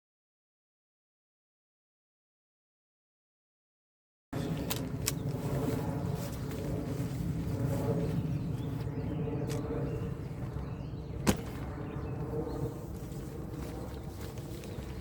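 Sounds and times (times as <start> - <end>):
low rumble: 4.4 - 15.0.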